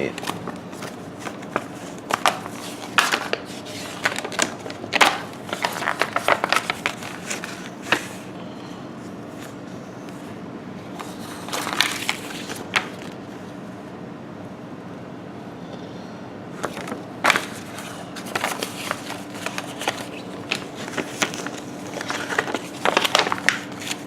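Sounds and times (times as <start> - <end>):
faint steady hum: 0.0 - 24.0
cardboard game pieces rustling and tapping: 0.1 - 8.1, 16.6 - 24.0.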